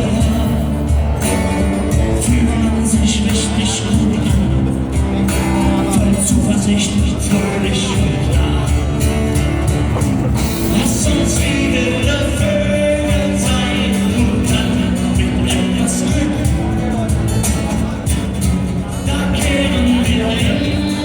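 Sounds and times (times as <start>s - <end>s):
person singing: 0.0s - 9.0s, 9.7s - 21.0s
live rock band playing: 0.0s - 21.0s
drum beat: 6.3s - 17.5s.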